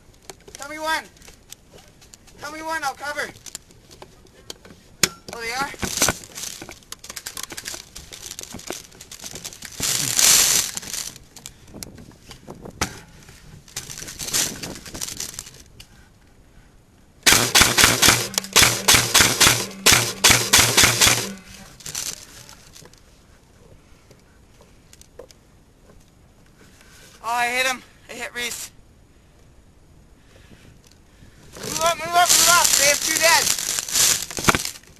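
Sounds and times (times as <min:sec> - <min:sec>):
rustling of gear and brush: 0:00.0 - 0:16.3, 0:17.7 - 0:27.2, 0:30.6 - 0:34.9
airsoft gun bursts: 0:17.2 - 0:21.5.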